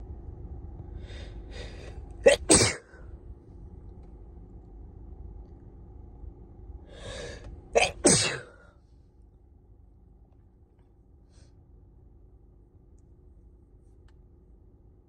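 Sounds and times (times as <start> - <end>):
breathy inhale: 1.0 - 2.0, 6.9 - 7.5
person sneezing: 2.2 - 2.9, 7.8 - 8.6.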